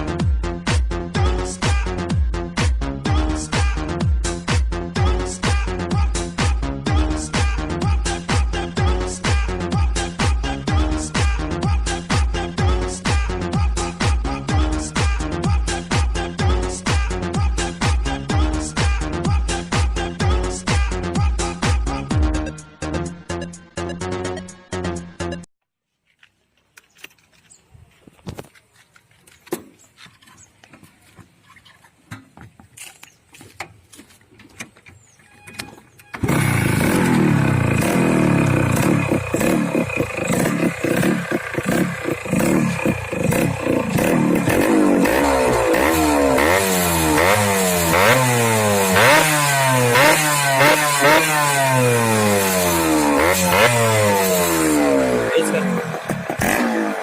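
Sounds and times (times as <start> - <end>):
motorcycle engine revving: 36.0 - 57.0.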